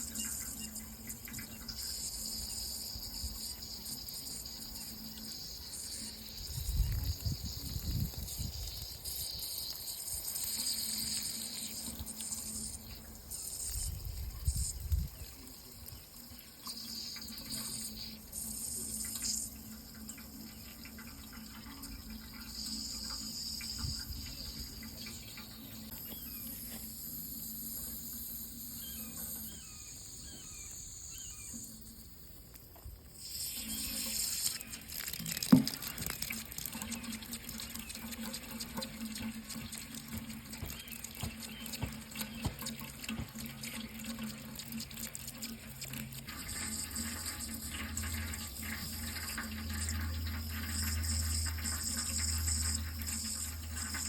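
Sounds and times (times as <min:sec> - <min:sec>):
tap running into sink: 0:34.0 - 0:54.0
low steady hum: 0:35.7 - 0:54.0.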